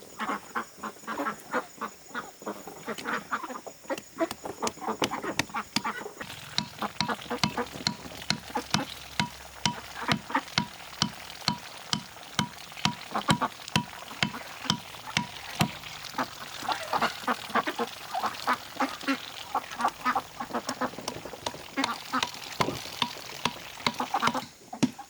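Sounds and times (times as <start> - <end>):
ducks quacking: 0.1 - 11.9, 12.8 - 25.0
sharp knocks: 4.3 - 15.9, 20.7 - 24.5.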